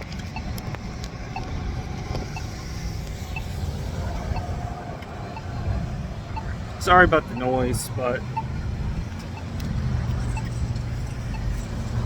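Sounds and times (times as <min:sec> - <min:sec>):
faint short beeps: 0:07.3 - 0:07.6.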